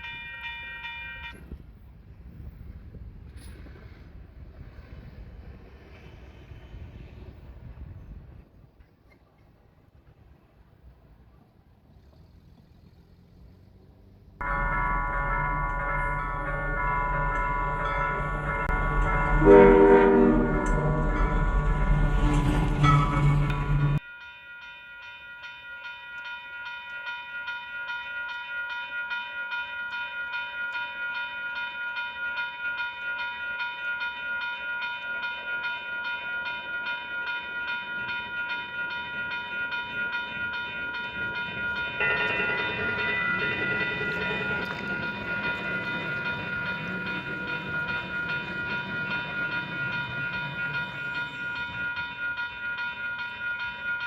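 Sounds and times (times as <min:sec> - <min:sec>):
crossing warning bell ringing: 0:00.0 - 0:01.8, 0:14.4 - 0:54.0
passing train rumble: 0:00.0 - 0:24.1, 0:33.0 - 0:54.0.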